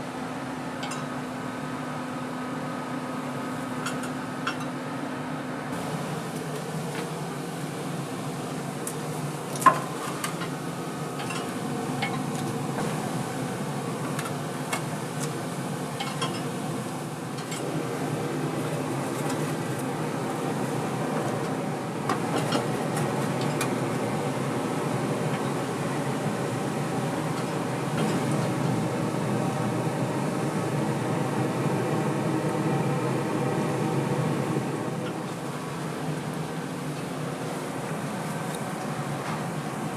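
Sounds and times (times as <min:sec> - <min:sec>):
utensils and dishes clinking: 0:00.8 - 0:01.1, 0:11.2 - 0:12.5, 0:16.0 - 0:16.6
steady hum: 0:05.0 - 0:39.9.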